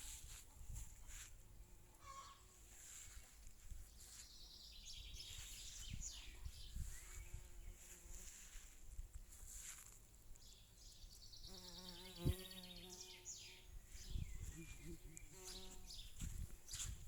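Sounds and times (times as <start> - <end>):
chicken calling faintly: 2.0 - 2.6.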